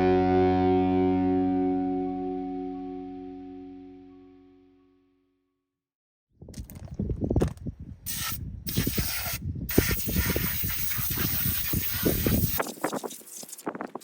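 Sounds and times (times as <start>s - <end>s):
pressure washer spraying: 8.1s - 13.6s.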